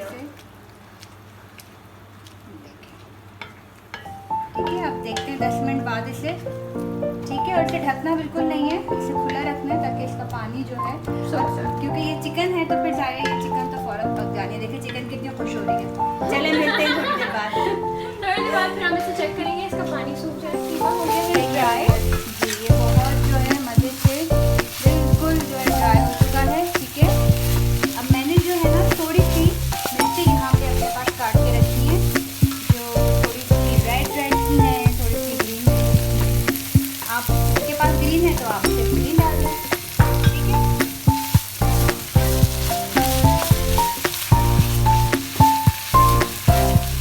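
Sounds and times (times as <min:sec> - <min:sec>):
meat sizzling in oil: 0:20.4 - 0:47.0
spatula scraping pan: 0:20.5 - 0:47.0
background music with beat: 0:21.2 - 0:47.0.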